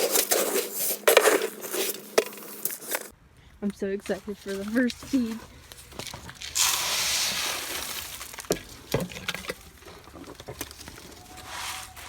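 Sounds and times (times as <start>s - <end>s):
bird seed being poured: 4.9s - 9.8s.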